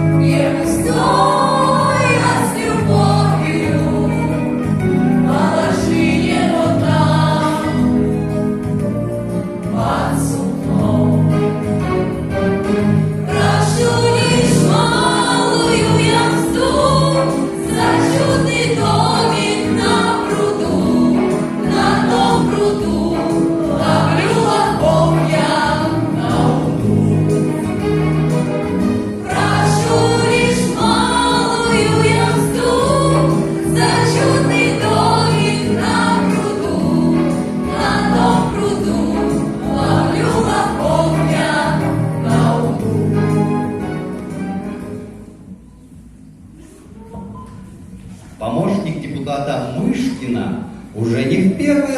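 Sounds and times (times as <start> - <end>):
group of voices singing: 0.0 - 4.5, 5.1 - 8.1, 9.6 - 11.6, 13.3 - 27.8, 29.1 - 43.5
held bass notes: 0.0 - 45.5.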